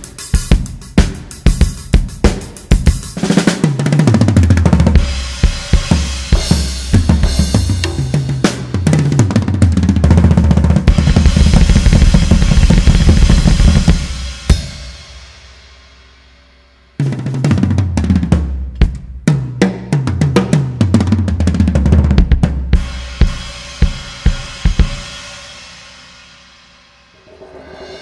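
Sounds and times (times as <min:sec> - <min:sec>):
drum kit fills: 0:00.0 - 0:28.0.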